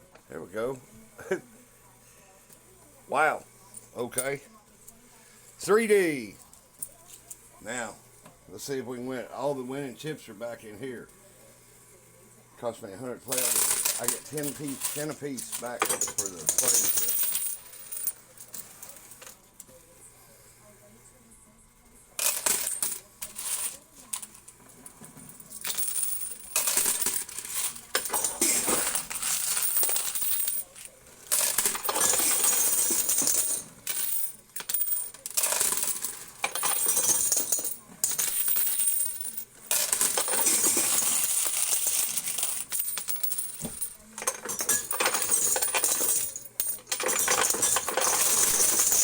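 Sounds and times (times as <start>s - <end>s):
coins clinking and sliding: 13.3s - 19.4s, 22.2s - 49.0s.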